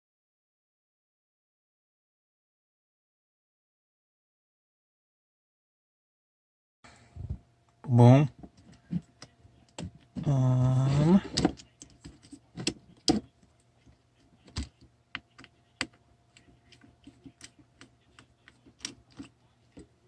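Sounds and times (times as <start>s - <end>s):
faint electrical hum: 6.9s - 20.0s
person humming: 10.2s - 11.3s.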